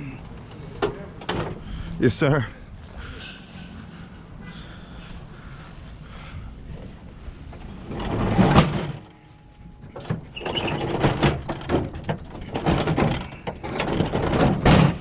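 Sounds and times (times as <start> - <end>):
knocks and rattles of objects moved: 0.0 - 4.8, 6.2 - 15.0
door sliding open with scrape: 7.5 - 9.1, 9.9 - 15.0.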